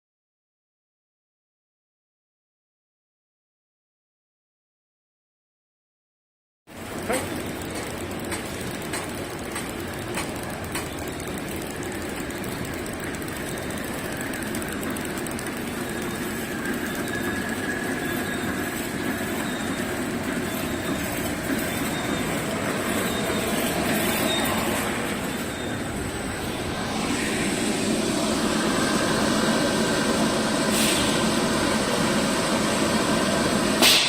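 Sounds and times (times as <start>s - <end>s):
wrapping machine rumble: 6.7s - 34.0s
faint machine whine: 6.8s - 33.9s.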